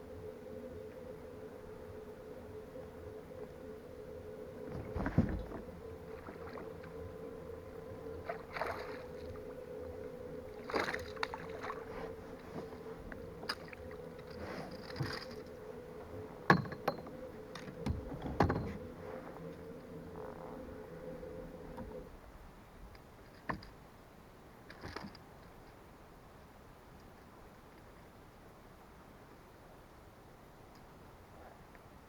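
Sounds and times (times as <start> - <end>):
steady hum: 0.0 - 23.4.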